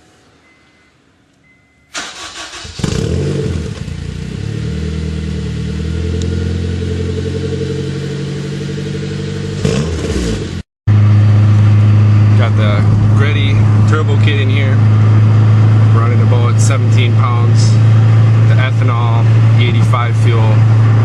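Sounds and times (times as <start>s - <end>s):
engine starter cranking: 1.9s - 3.1s
engine revving: 2.0s - 21.0s
deep steady engine drone: 2.6s - 21.0s
car engine idling: 10.9s - 21.0s.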